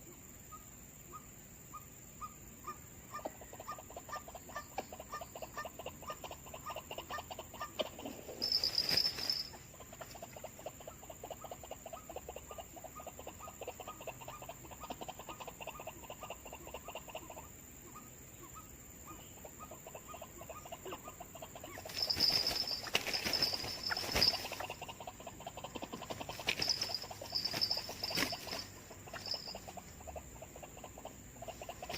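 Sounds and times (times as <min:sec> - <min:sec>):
night insects chorus: 0:00.0 - 0:31.9.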